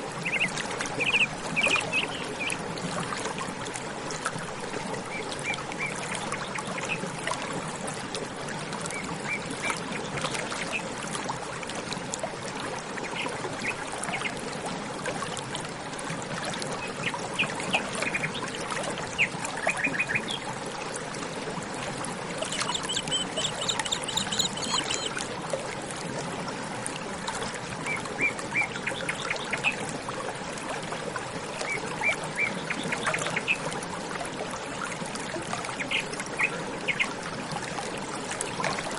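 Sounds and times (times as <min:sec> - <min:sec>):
water trickling: 0:00.0 - 0:38.9
small birds chirping: 0:22.4 - 0:25.2.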